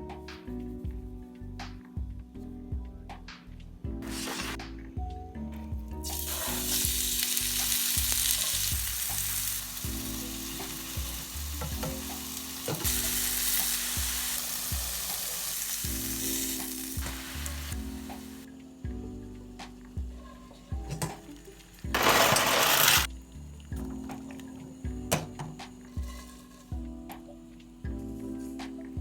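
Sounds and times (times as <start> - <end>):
food sizzling in a pan: 6.0 - 19.2, 20.0 - 27.3.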